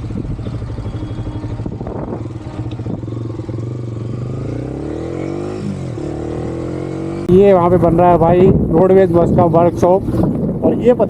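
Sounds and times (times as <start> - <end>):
motorcycle engine revving: 0.0 - 8.0.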